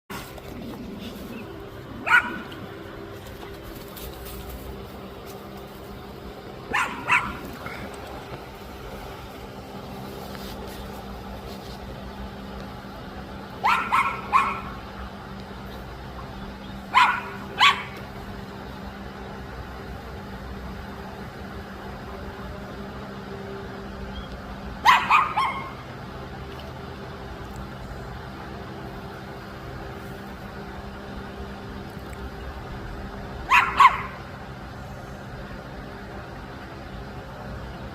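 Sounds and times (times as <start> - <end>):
steady low hum: 0.1 - 37.9
dog barking: 2.0 - 2.6, 6.7 - 7.9, 13.6 - 14.8, 16.9 - 18.0, 24.8 - 25.8, 33.5 - 34.2.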